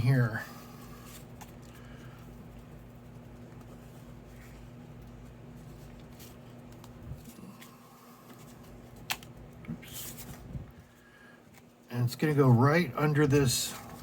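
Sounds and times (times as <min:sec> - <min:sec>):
low electrical hum: 0:00.0 - 0:14.0
cardstock handling: 0:03.4 - 0:10.5.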